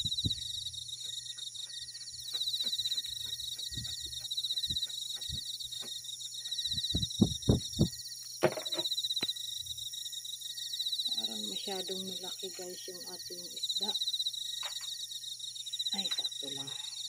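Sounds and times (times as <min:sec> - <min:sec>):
louder thumps: 0:00.0 - 0:00.4, 0:06.7 - 0:08.9
crickets chirring: 0:00.0 - 0:17.0
light knocks and taps: 0:06.7 - 0:08.9.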